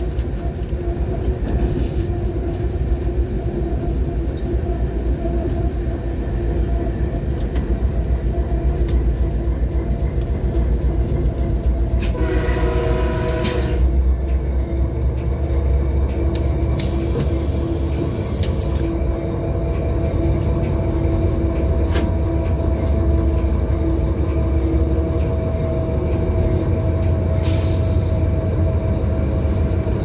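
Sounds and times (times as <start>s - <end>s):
train rumbling: 0.0s - 30.0s
train horn: 12.0s - 14.0s.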